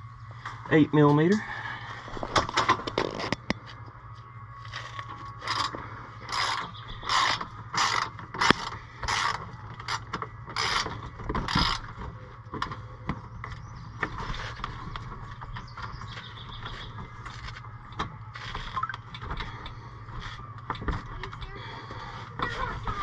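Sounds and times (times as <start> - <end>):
ratchet wrench clicking: 5.4 - 5.7, 6.3 - 10.9, 11.5 - 11.9.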